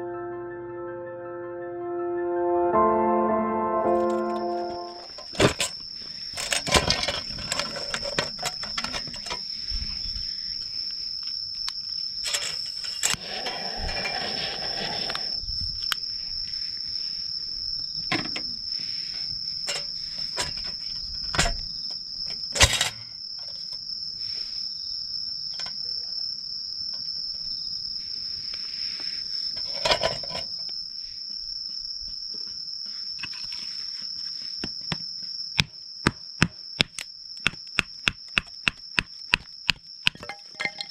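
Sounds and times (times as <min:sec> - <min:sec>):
insects trilling: 0:03.8 - 0:40.9
clicks and knocks of handling: 0:05.1 - 0:09.5.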